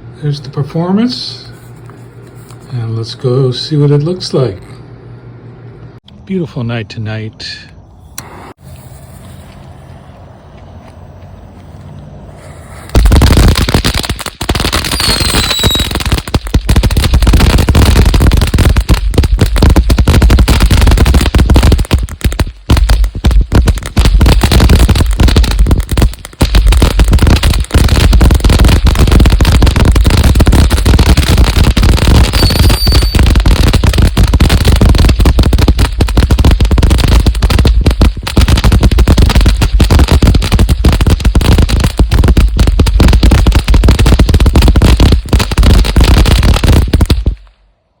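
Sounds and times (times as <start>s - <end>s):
firework fountain crackling: 8.2s - 10.4s, 11.8s - 47.5s.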